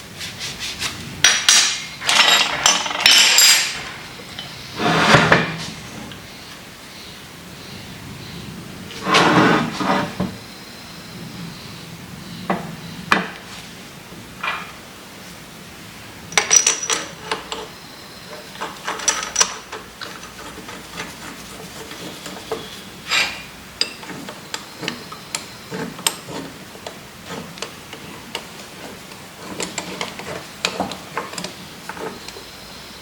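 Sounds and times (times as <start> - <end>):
metal tools clinking against vise: 1.2 - 4.6, 16.3 - 21.1.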